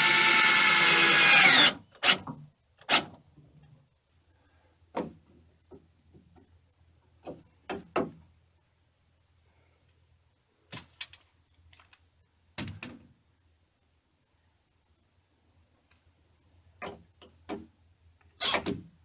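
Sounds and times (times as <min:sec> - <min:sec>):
wood knocks and clunks: 0:04.9 - 0:06.6, 0:07.2 - 0:08.3, 0:12.6 - 0:13.1.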